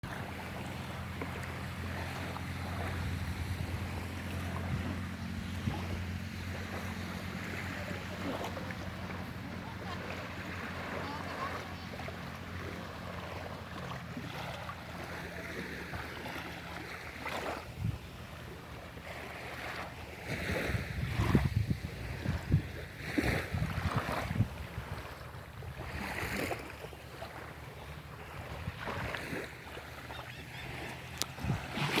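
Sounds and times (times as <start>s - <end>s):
sea waves washing in: 0.0s - 32.0s
wind gusting on microphone: 17.5s - 18.3s, 20.3s - 26.6s, 31.2s - 32.0s.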